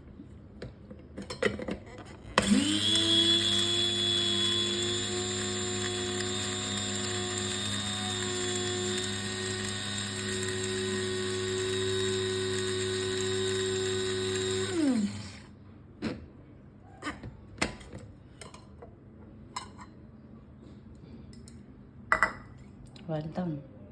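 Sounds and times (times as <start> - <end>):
electric grinder motor whining: 2.4 - 15.5.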